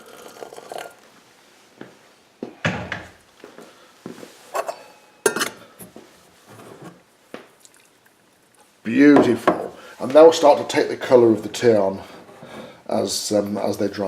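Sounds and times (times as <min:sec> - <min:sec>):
china teapot and cup clinking: 0:04.6 - 0:05.6.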